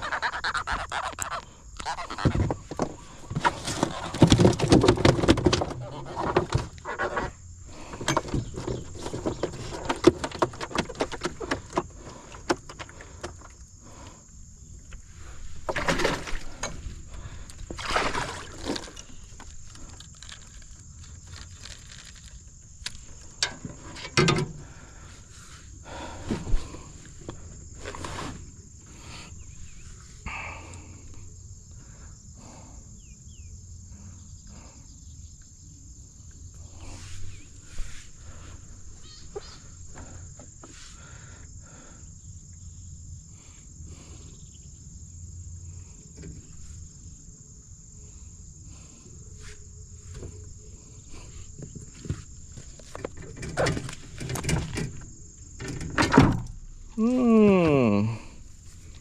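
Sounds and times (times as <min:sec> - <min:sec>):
insects droning: 0:00.0 - 0:59.0
handling clicks and knocks: 0:02.4 - 0:06.8, 0:07.9 - 0:13.6, 0:18.6 - 0:24.6, 0:51.6 - 0:56.6.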